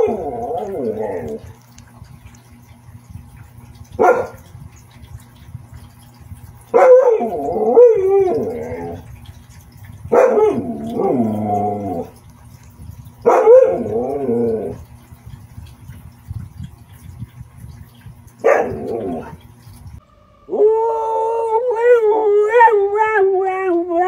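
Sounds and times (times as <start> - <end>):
dog howling barks: 0.0 - 1.5, 6.7 - 9.0, 10.1 - 12.1, 13.2 - 14.8, 18.4 - 19.4.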